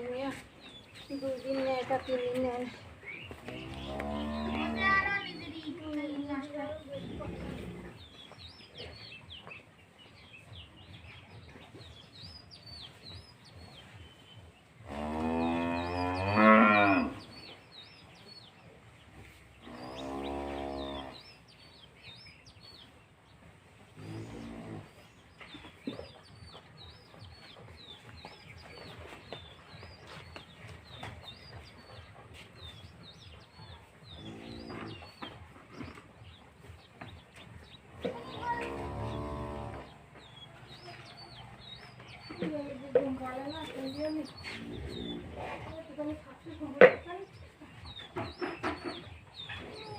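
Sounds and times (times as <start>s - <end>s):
small birds chirping: 0.0s - 49.9s
cows mooing: 3.5s - 5.0s, 14.9s - 17.2s, 19.6s - 21.2s, 38.1s - 40.0s.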